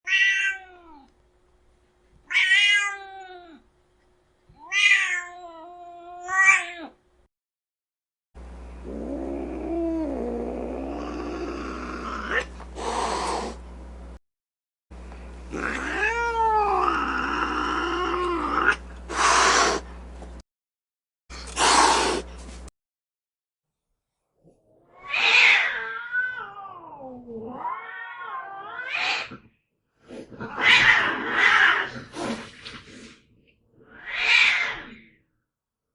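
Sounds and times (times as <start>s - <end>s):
cat yowling: 0.0s - 1.1s, 2.3s - 3.6s, 4.6s - 7.0s, 15.6s - 18.8s, 24.9s - 29.3s, 33.8s - 35.0s
cat hissing: 11.9s - 13.6s, 18.5s - 19.9s, 21.5s - 22.3s, 28.8s - 29.4s, 33.8s - 35.0s.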